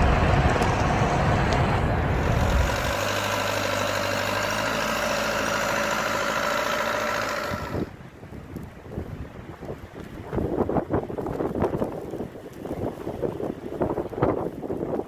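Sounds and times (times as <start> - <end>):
engine humming: 0.0 - 8.1
rough rumbling noise: 0.0 - 8.1.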